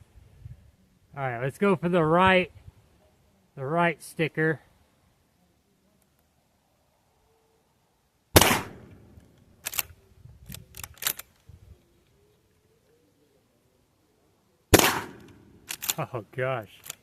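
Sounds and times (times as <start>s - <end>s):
shotgun shots: 8.4s - 9.2s, 14.7s - 15.8s
metallic clicks of gun action: 9.0s - 11.5s, 15.0s - 16.1s, 16.7s - 17.0s.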